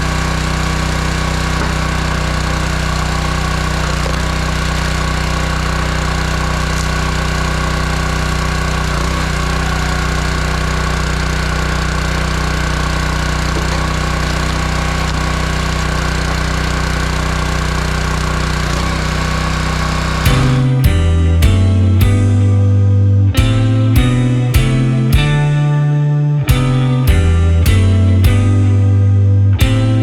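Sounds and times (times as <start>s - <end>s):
small gasoline engine running: 0.0s - 22.5s.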